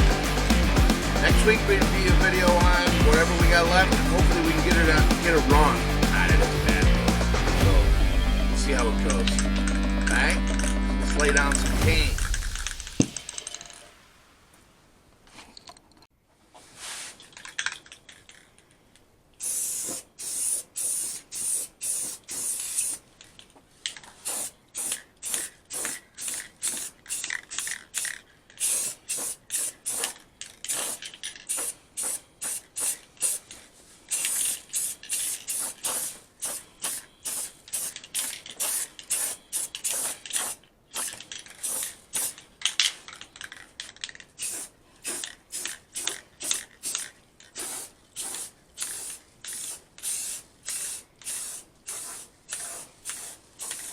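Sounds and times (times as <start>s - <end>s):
spray paint hissing bursts: 0.0s - 7.8s, 19.4s - 23.1s, 24.1s - 42.4s, 44.4s - 53.9s.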